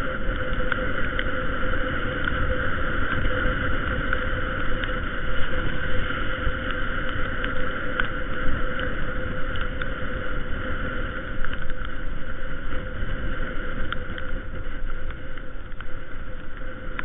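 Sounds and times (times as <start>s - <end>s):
constant hum: 0.0s - 17.0s
wind and road noise: 0.0s - 17.0s.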